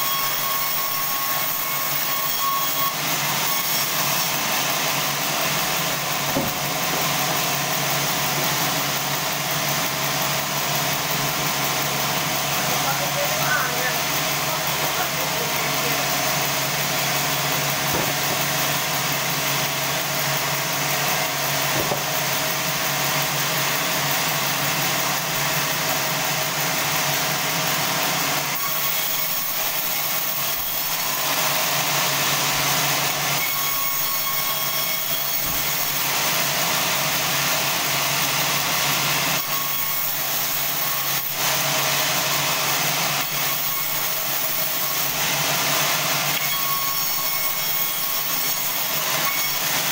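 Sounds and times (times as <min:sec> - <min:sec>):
band saw cutting log: 0:00.0 - 0:49.9.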